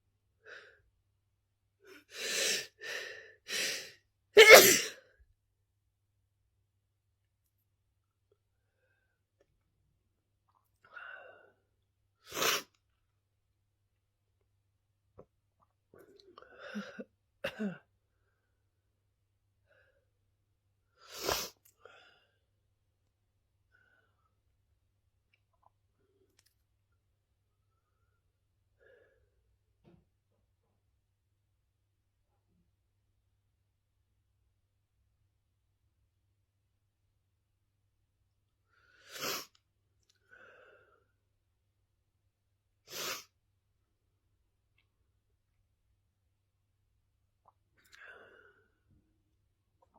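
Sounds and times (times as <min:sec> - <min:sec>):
person sneezing: 0:03.6 - 0:05.0.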